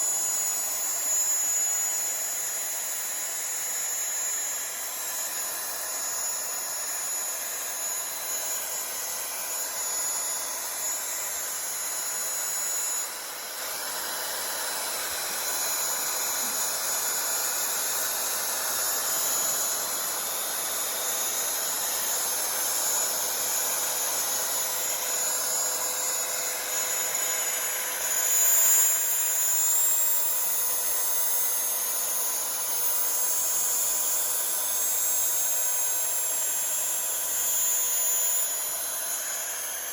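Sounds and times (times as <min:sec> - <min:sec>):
router spindle high whine: 0:00.0 - 0:39.9
bit cutting aluminium hissing: 0:14.6 - 0:20.9.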